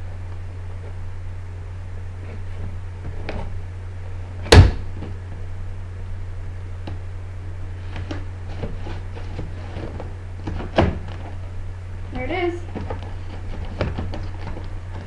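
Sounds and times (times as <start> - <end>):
steady low hum: 0.0 - 15.0
loud thump: 4.4 - 5.2.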